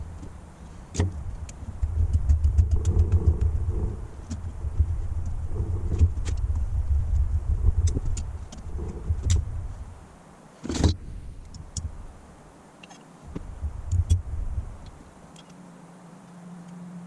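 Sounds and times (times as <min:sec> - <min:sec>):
low rumble: 0:00.0 - 0:10.0, 0:13.3 - 0:15.2.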